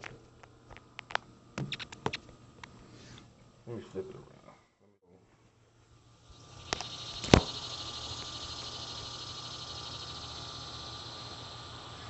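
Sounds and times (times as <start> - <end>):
faint high whine: 0.0 - 12.0
steady hiss: 5.4 - 12.0.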